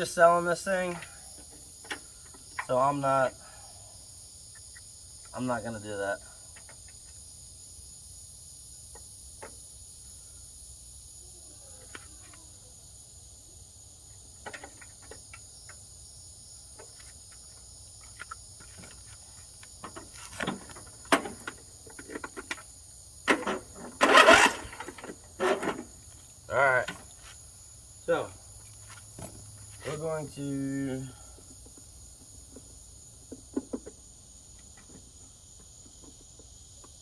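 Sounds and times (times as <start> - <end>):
insects droning: 0.0 - 37.0
rattling burst: 23.3 - 25.9.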